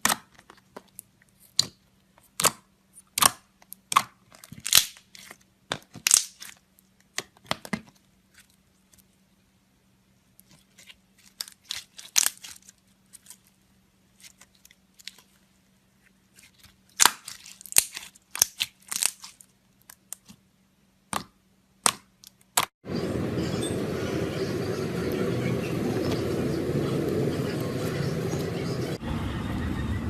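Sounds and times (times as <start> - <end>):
loud steady noise: 22.8 - 30.0.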